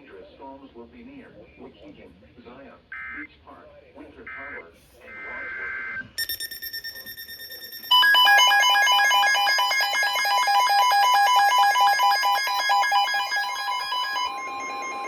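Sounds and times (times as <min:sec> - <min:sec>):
emergency alert tones: 0:04.3 - 0:15.0
rapid repeating beeps: 0:04.3 - 0:15.0.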